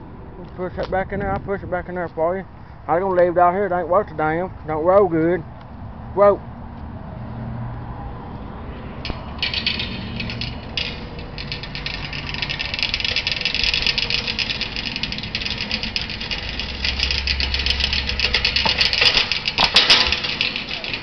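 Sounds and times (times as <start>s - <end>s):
shopping cart rattling: 9.3s - 21.0s.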